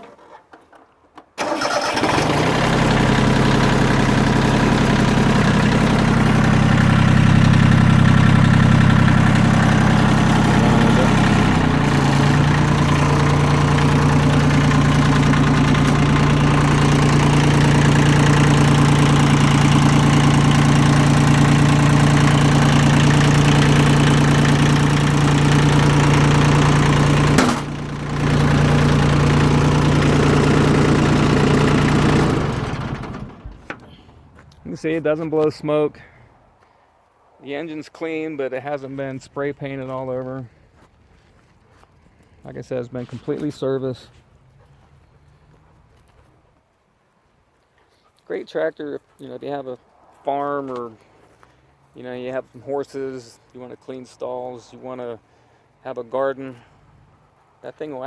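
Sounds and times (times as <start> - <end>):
diesel tractor engine running: 1.4 - 36.0, 56.5 - 57.5.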